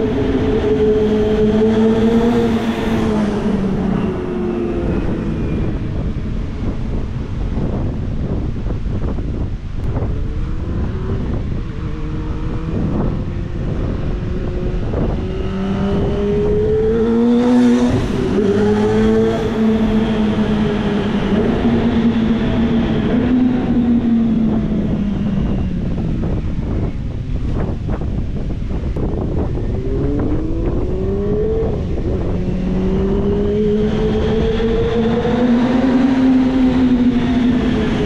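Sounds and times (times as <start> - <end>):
heavy wind noise: 0.0 - 38.0
motorcycle engine revving: 9.9 - 26.8, 28.8 - 38.0.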